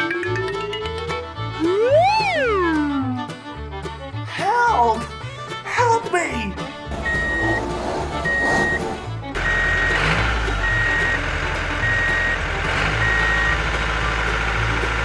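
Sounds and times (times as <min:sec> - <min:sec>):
low engine rumble: 0:05.1 - 0:15.0
vehicle reversing alarm beeps: 0:06.9 - 0:13.7.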